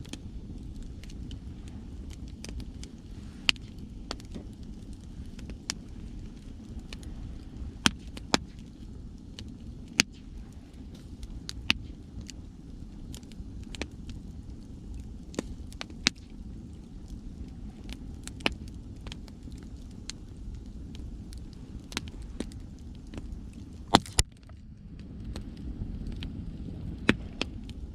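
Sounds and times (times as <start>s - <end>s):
ocean waves rumbling: 0.0s - 8.2s
bonfire crackling and popping: 0.0s - 27.9s.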